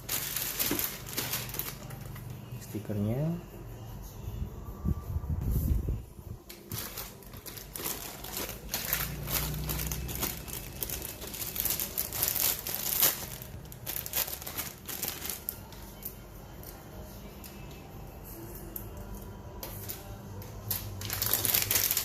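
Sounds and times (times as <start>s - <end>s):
plastic bag crinkling: 0.0s - 2.2s, 6.5s - 15.8s, 20.7s - 22.0s.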